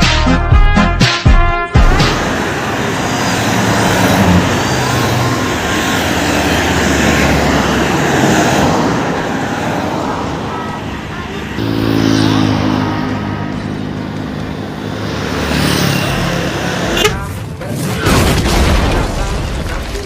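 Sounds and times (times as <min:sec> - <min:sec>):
heavy vehicle passing: 0:01.8 - 0:17.8.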